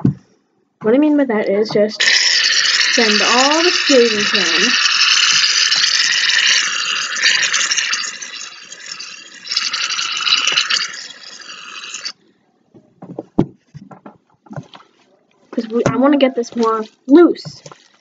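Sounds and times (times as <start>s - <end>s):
aerosol can spraying: 2.0s - 8.4s.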